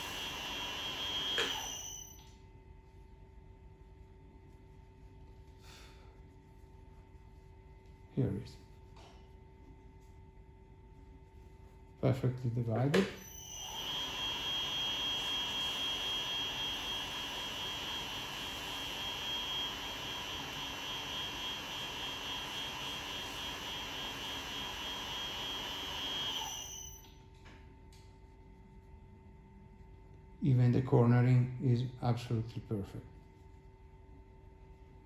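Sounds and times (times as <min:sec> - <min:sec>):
machine running with high whine: 0:00.0 - 0:02.3, 0:13.2 - 0:27.1
faint hum: 0:00.0 - 0:13.8, 0:26.5 - 0:35.0.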